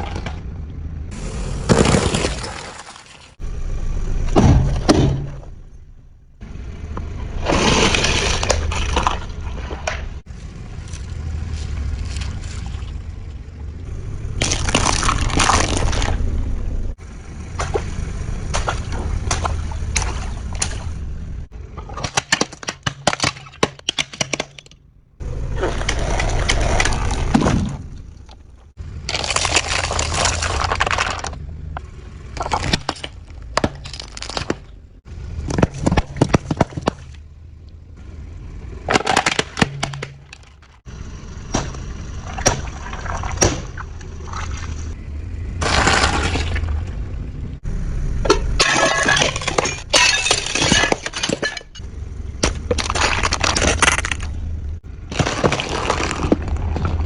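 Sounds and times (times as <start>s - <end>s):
objects cracking under a vehicle: 0.0s - 3.4s, 4.2s - 13.4s, 14.3s - 45.0s, 45.6s - 47.6s, 48.2s - 57.0s
low rumble: 3.3s - 22.0s, 24.6s - 57.0s.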